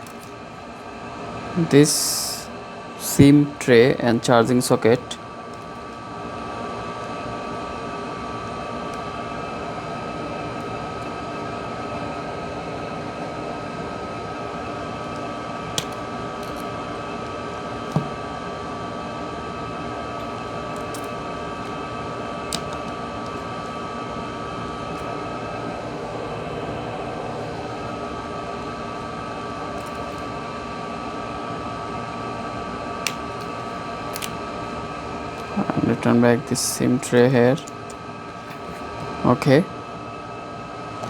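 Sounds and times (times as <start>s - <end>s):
mechanical hum with high whine: 0.0s - 41.0s
small clicks of parts handled: 34.1s - 34.3s.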